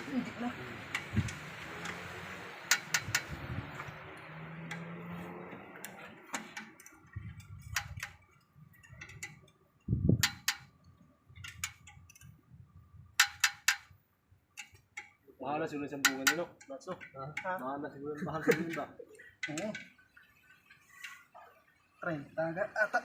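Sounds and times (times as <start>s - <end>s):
hand tools clinking on metal: 13.2s - 15.2s, 15.8s - 20.1s.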